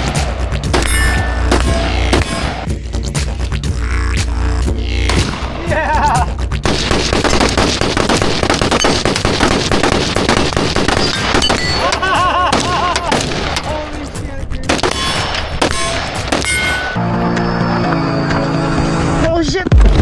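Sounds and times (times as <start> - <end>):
background music: 0.0 - 20.0
rapid gunfire: 6.6 - 13.8, 14.7 - 17.0.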